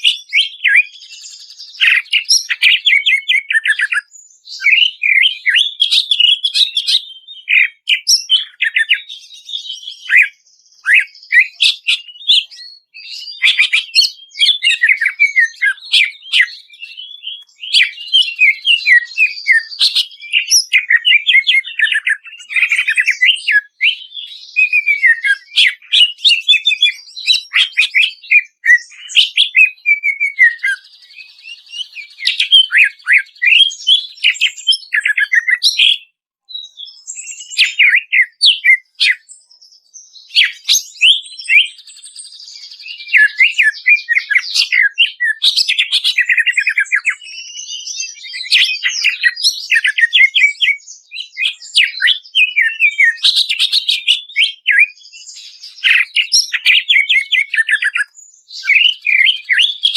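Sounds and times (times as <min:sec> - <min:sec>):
bird singing chirps and trills: 0:00.0 - 0:59.9.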